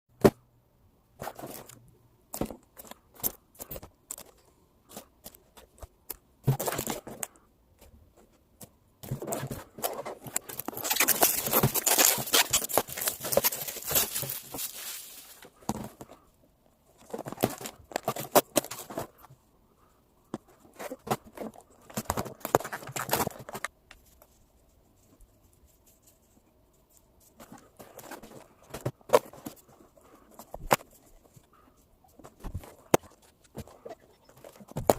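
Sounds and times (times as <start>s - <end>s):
packaging rustling and crinkling: 9.1s - 16.2s.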